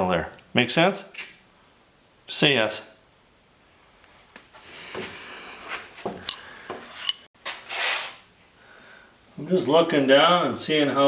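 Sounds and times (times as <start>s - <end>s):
metal tools clinking and scraping: 6.2s - 7.3s.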